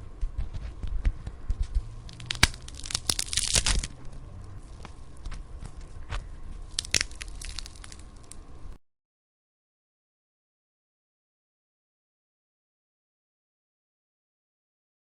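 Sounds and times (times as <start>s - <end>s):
bone cracking: 2.0s - 8.5s
bone crunching: 2.0s - 8.5s.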